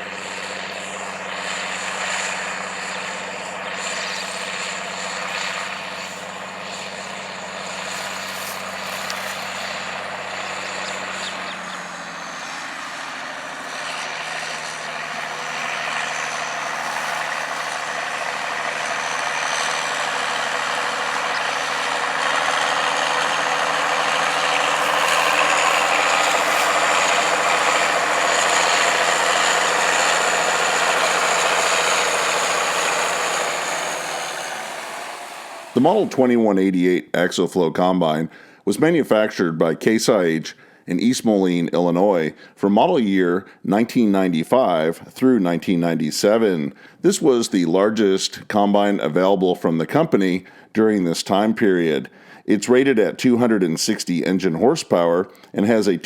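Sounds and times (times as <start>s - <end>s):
diesel machinery engine running: 0.0s - 36.5s.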